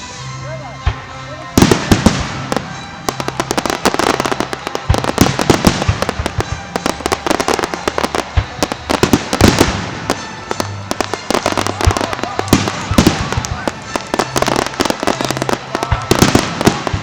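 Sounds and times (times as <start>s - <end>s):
fireworks bangs and crackling: 0.8s - 17.0s.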